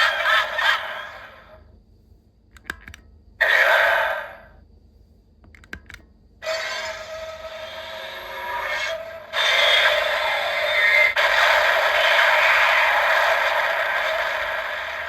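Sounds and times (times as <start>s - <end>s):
harsh electronic grinding noise: 6.4s - 15.0s.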